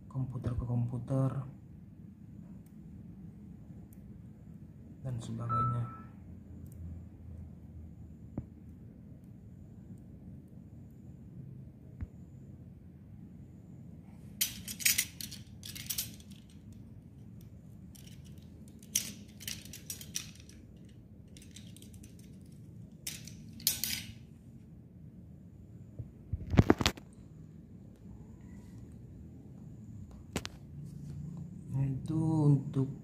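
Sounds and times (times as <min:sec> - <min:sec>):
cable wires rustling and clicking: 0:14.3 - 0:24.2, 0:26.3 - 0:27.1.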